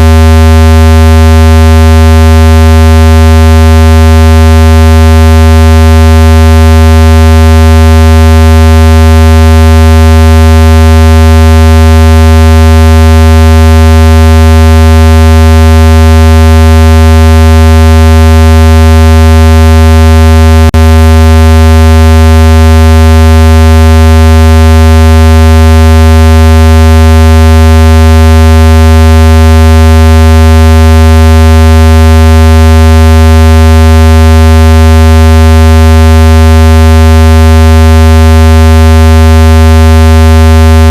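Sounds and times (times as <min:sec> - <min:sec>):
loud low buzzing tone: 0:00.0 - 0:40.9.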